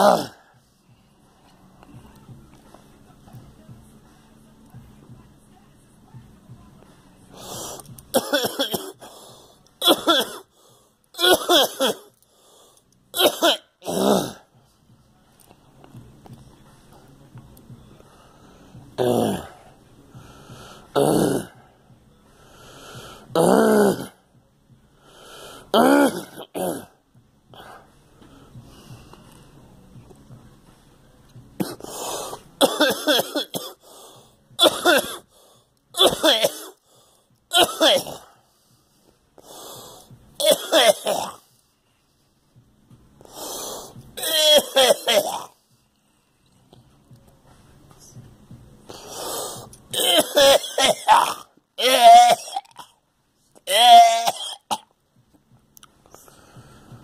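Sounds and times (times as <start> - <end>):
person coughing hard: 0.0 - 0.4, 8.1 - 9.1, 9.8 - 10.5, 11.2 - 12.1, 13.2 - 14.4, 21.0 - 21.6, 25.7 - 26.9, 31.6 - 31.9, 32.6 - 33.8, 34.6 - 35.2, 36.0 - 36.8, 37.5 - 38.3, 40.4 - 41.4, 44.2 - 45.5, 49.9 - 52.9, 53.7 - 54.9.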